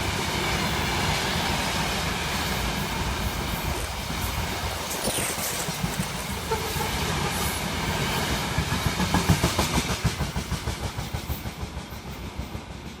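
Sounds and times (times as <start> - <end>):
train wheels clacking over rails: 6.5 - 13.0.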